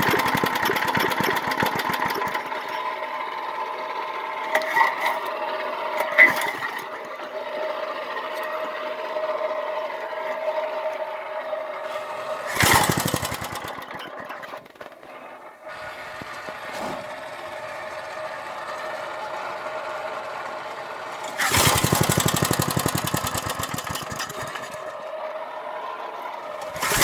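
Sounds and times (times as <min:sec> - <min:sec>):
small engine running: 0:00.0 - 0:27.0.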